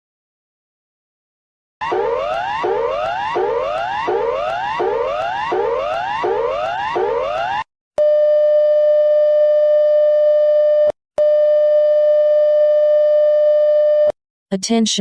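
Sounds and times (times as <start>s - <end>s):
rising sweep alert tone: 1.8s - 7.6s.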